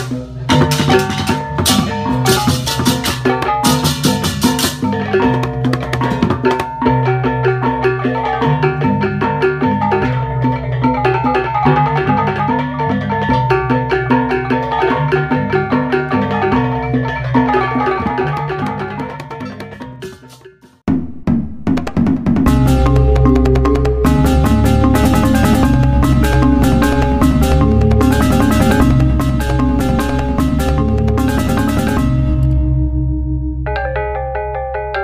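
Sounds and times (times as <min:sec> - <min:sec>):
steady drum pattern: 0:00.0 - 0:06.9, 0:17.8 - 0:33.2
xylophone-like notes: 0:00.0 - 0:20.5, 0:22.5 - 0:32.9.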